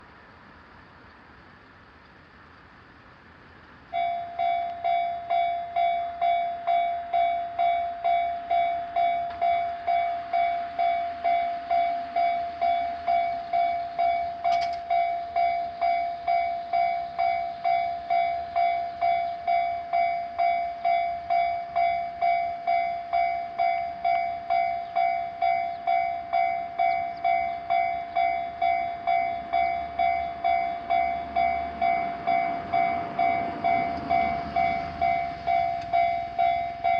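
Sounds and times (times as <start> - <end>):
railroad crossing bell dinging: 3.8 - 36.9.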